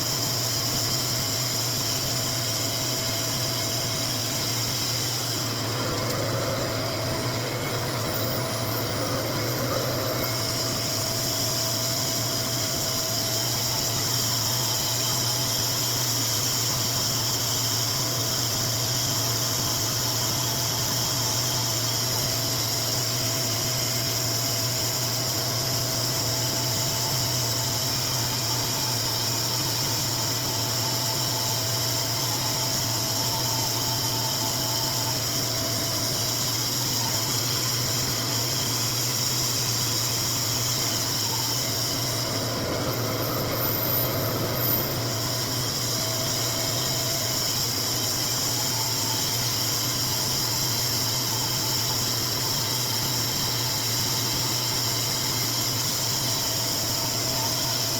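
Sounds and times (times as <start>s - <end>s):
airflow hiss: 0.0s - 17.8s, 18.4s - 57.9s
hair dryer motor hum: 2.1s - 15.4s, 25.3s - 57.9s.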